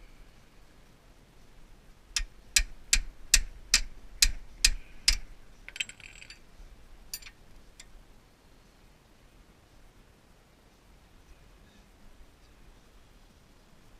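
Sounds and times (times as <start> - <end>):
hand tool metallic clicks: 2.2 - 6.4, 7.1 - 7.9.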